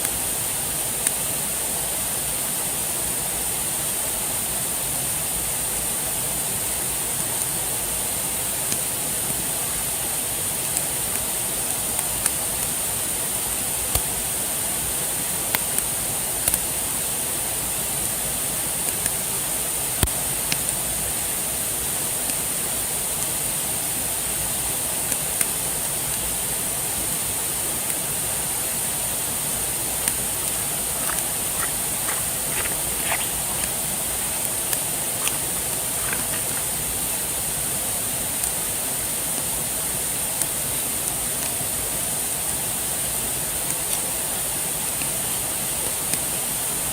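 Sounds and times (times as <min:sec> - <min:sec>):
flowing water: 0:00.0 - 0:46.9.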